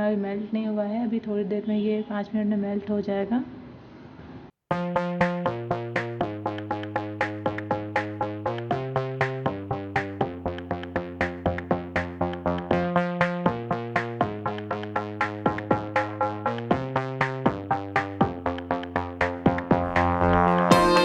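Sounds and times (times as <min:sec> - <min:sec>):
electronic music with steady beat: 0:04.7 - 0:21.0.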